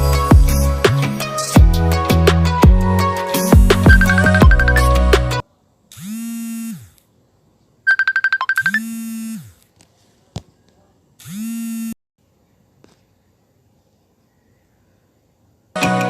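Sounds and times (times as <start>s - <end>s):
rapid beeps: 3.9s - 4.9s, 7.9s - 9.3s
buzzy electronic ringtone: 3.9s - 5.0s, 7.9s - 9.5s.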